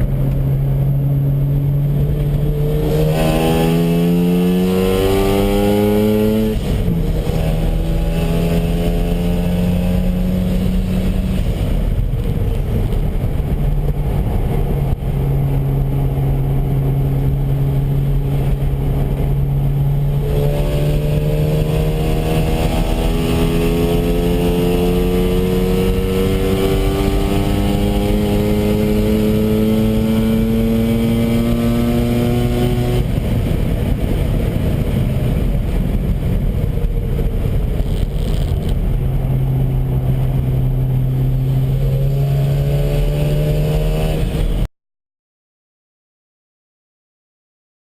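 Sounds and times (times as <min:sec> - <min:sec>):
rotary engine revving: 0:01.6 - 0:12.2, 0:15.9 - 0:33.3.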